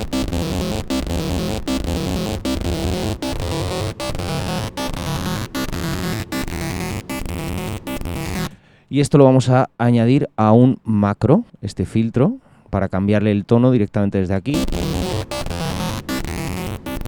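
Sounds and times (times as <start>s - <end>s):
distorted synth lead: 0.0s - 8.5s, 14.6s - 17.0s.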